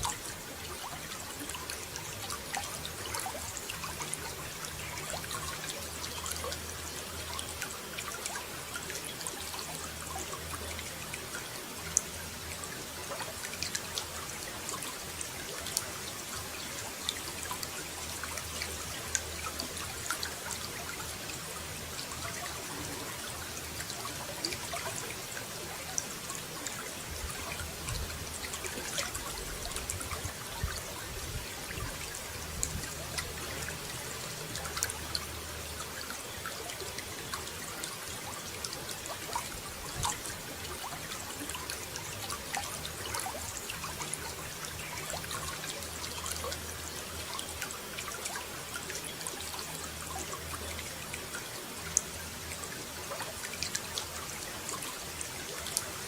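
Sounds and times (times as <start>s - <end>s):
running water trickling: 0.0s - 56.0s.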